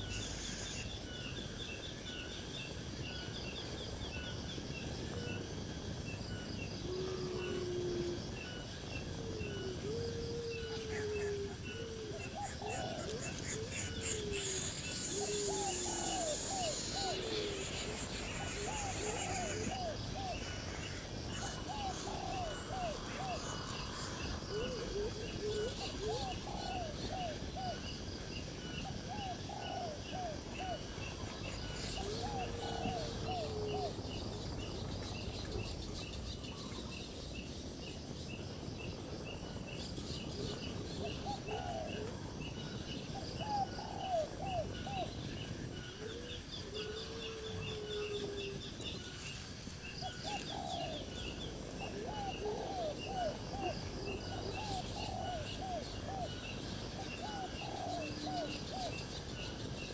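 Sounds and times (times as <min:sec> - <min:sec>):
high-pitched insect ticking: 0:00.0 - 0:00.9
birds calling: 0:10.0 - 0:27.8, 0:40.6 - 0:59.2.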